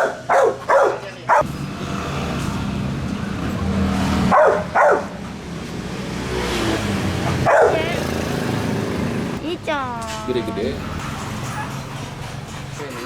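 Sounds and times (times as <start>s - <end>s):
dog barking: 0.0s - 1.5s, 4.2s - 5.2s, 7.3s - 8.1s.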